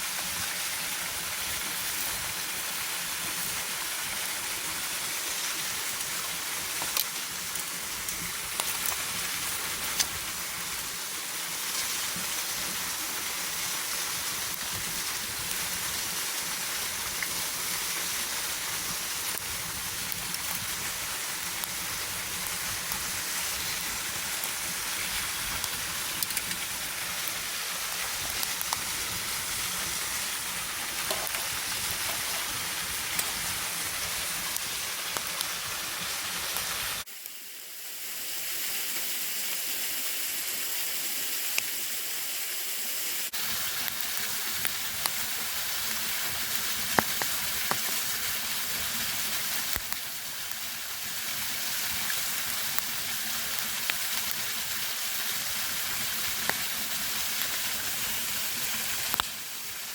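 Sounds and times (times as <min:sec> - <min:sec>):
campfire crackling pops: 0:04.8 - 0:10.7, 0:13.5 - 0:37.4, 0:43.3 - 0:59.4.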